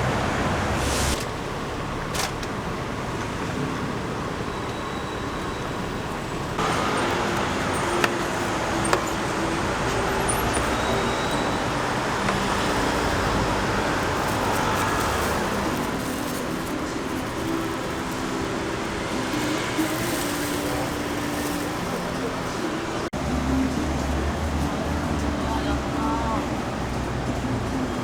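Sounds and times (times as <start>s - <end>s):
street traffic: 0.0s - 28.0s.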